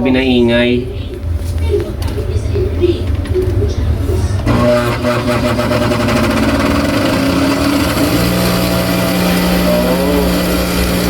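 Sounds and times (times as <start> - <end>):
sewing machine motor humming: 4.4 - 11.0.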